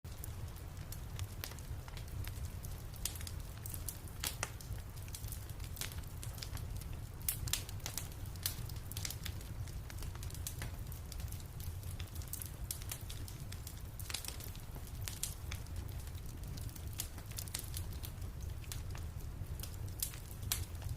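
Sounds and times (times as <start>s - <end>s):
wood fire crackling and popping: 0.1s - 20.9s.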